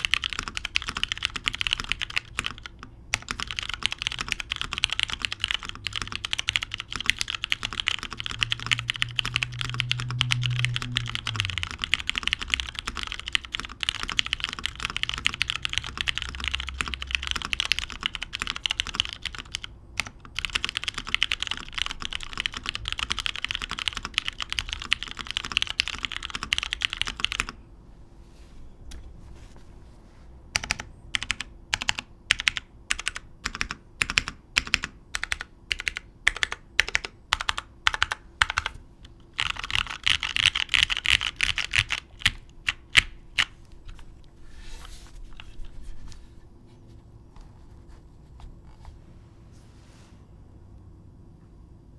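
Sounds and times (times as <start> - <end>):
mechanical keyboard typing: 0.0 - 27.6, 30.5 - 43.6.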